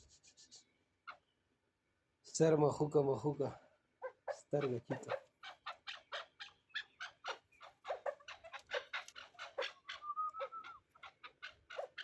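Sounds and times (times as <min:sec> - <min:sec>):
partridge clucking calls: 0:04.0 - 0:12.0.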